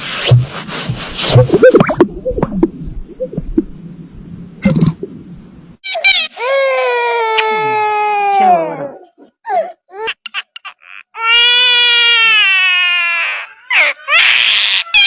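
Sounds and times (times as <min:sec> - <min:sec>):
infant crying: 0:05.9 - 0:15.0.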